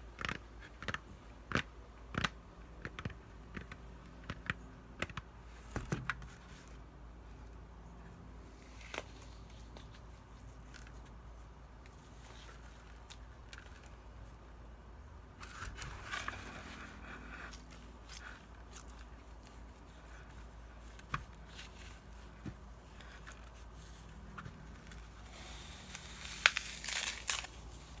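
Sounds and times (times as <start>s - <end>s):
floral foam tapping and scratching: 0.0s - 14.4s, 15.4s - 28.0s
crumbly foam scraping: 15.4s - 28.0s
hissy crunching: 15.4s - 28.0s.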